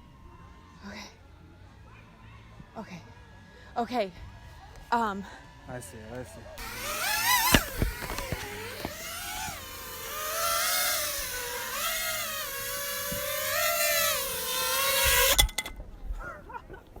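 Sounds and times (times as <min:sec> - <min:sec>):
quadcopter propellers whining: 0:05.7 - 0:15.4.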